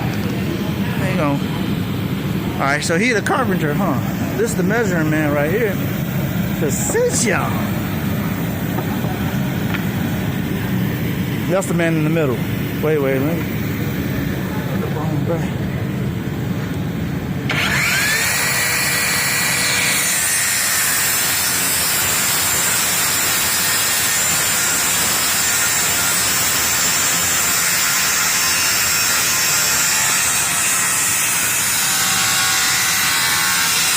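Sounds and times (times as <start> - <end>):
power tool grinding into wood: 17.5 - 30.7
power tool whine: 17.5 - 33.9.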